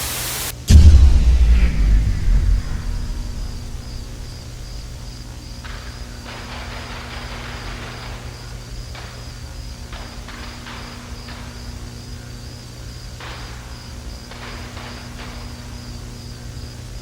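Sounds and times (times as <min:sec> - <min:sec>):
low hum and hiss: 0:00.0 - 0:05.4
crickets chirping: 0:00.1 - 0:06.7.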